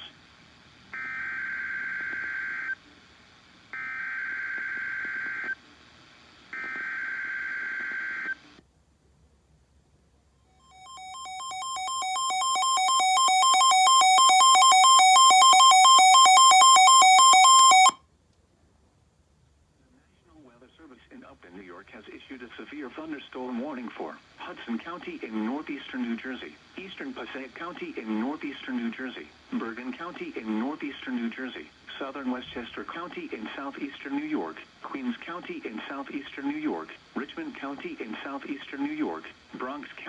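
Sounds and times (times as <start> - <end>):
digital data tone bursts: 10.7 - 18.0.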